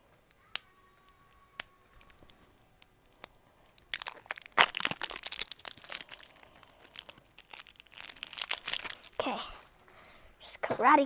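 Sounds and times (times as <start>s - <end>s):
plastic packaging crinkling: 1.0s - 9.5s.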